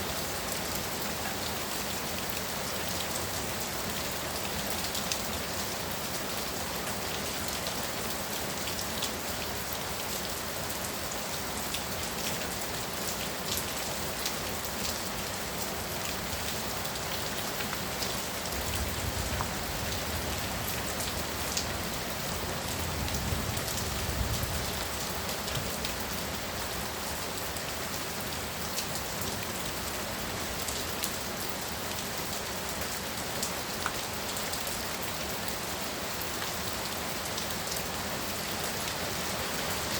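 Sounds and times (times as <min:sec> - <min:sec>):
heavy rain on hard surface: 0:00.0 - 0:39.9.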